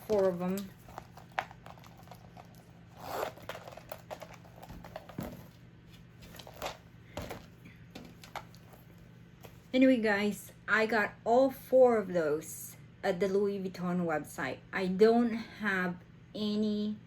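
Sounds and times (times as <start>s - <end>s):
light rustling of packaging: 0.0s - 9.8s.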